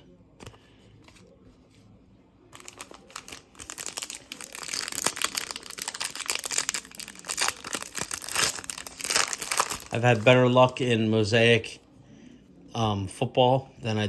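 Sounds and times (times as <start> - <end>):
foil wrapper crinkling: 2.6 - 10.4.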